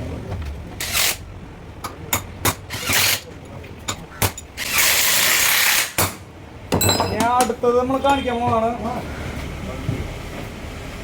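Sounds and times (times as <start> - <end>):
metal tools clicking and rattling: 6.8 - 7.5.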